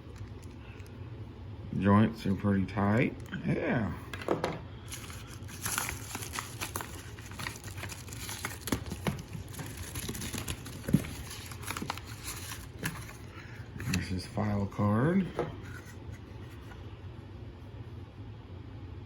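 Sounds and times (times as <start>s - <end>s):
packaging crinkling: 4.8s - 14.1s.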